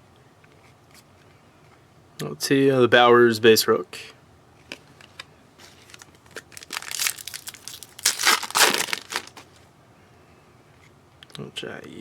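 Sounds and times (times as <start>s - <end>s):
wrapper crinkled and torn open: 5.6s - 9.5s.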